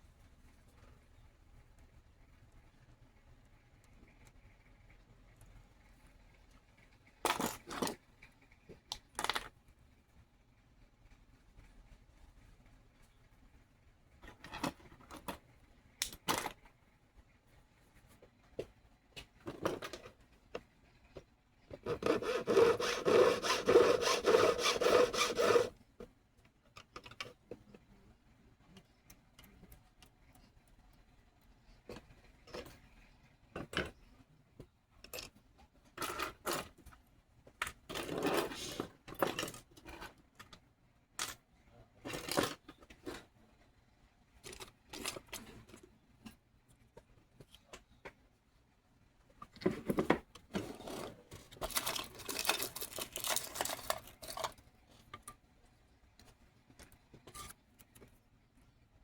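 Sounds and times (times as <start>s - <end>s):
hand tool strokes on metal: 21.9s - 25.7s.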